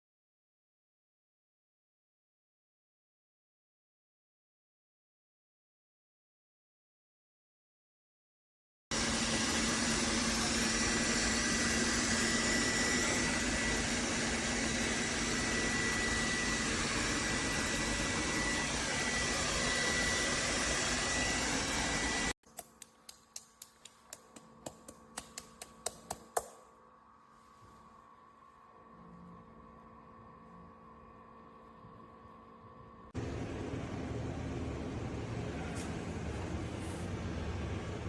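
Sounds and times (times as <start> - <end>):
vacuum motor whining: 8.9 - 22.4
faint hum: 26.6 - 38.0.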